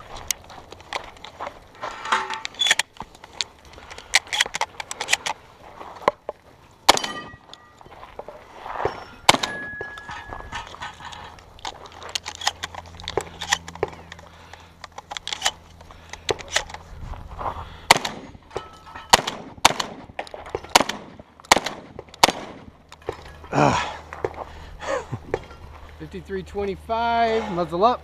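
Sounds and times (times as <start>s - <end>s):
clicks and clatter of gun action: 0.2s - 5.4s, 9.3s - 16.8s
shotgun shots: 6.9s - 7.3s, 9.3s - 9.8s, 17.9s - 18.4s, 19.1s - 22.7s.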